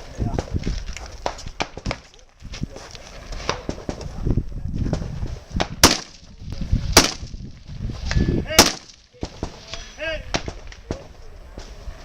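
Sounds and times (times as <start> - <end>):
rifle shots: 5.8 - 6.2, 7.0 - 7.3, 8.6 - 9.4.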